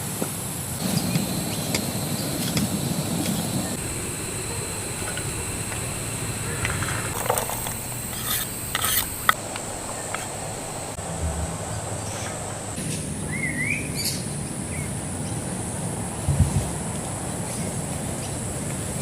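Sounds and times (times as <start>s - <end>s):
high-pitched background hum: 0.0s - 19.0s
bird chirp: 7.8s - 15.4s.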